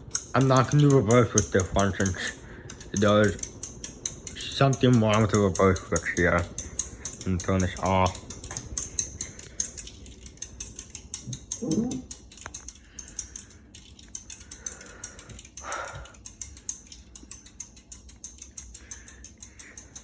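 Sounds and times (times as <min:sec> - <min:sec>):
ceiling fan ticking: 0:00.0 - 0:20.0.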